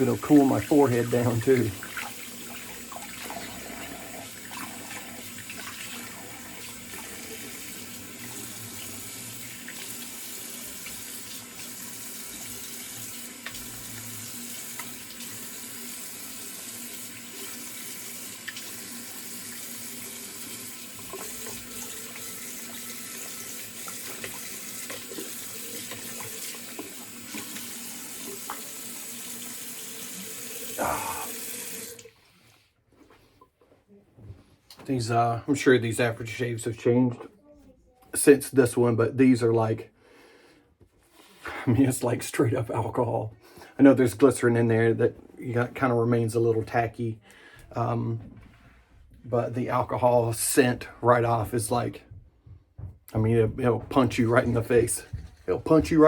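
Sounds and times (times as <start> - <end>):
water running from sink tap: 0.0 - 32.1, 53.2 - 56.0.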